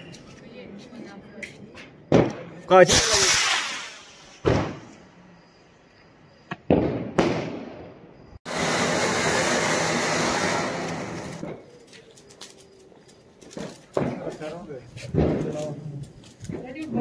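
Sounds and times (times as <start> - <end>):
firecracker bangs: 2.1 - 5.0, 6.5 - 7.9, 15.1 - 15.8
firecracker hissing: 2.7 - 5.5, 6.8 - 16.9
small crackles: 11.3 - 17.0.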